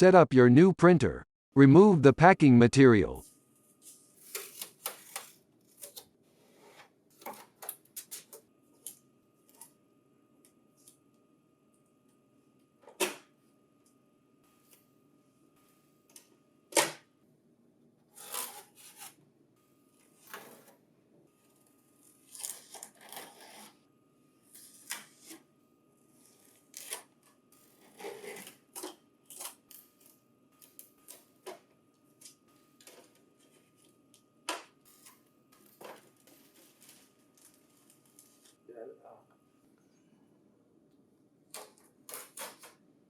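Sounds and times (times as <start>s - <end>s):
tape and plastic rustling: 3.7s - 6.1s, 34.9s - 38.6s.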